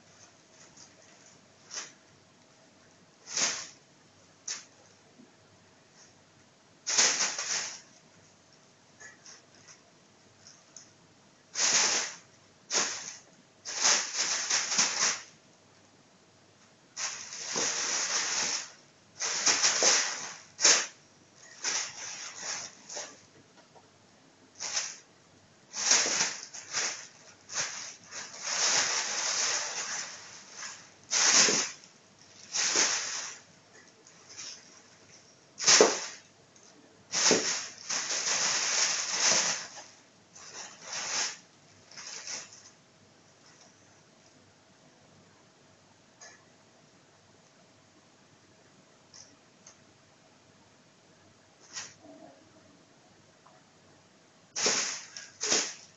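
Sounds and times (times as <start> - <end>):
plastic bag crinkling: 11.6 - 15.3, 25.7 - 33.4, 37.1 - 42.8.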